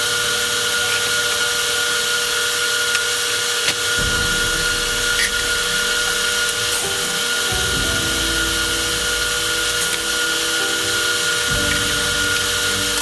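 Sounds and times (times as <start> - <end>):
welding arc crackling hiss: 0.0 - 13.0.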